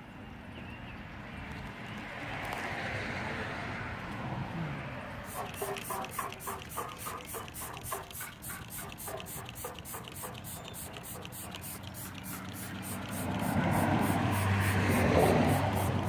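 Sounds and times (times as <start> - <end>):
spray bottle spraying: 5.2 - 16.0.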